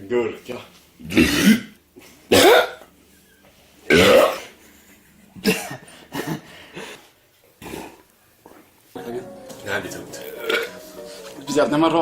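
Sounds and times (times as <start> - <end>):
men burping: 1.0 - 2.9, 3.9 - 4.6, 5.4 - 6.9
men coughing: 1.1 - 2.9, 3.9 - 4.6, 5.4 - 7.0.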